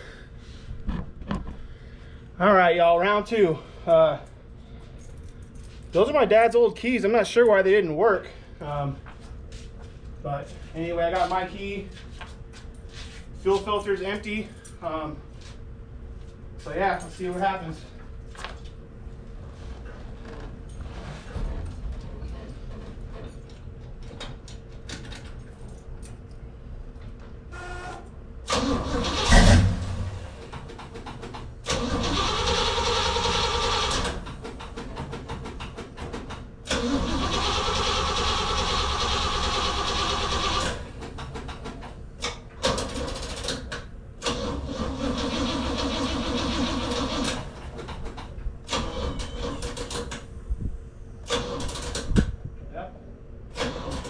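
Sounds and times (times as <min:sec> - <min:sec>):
engine cranking without starting: 0:28.5 - 0:41.8, 0:42.6 - 0:50.2, 0:51.2 - 0:52.1, 0:53.5 - 0:54.0.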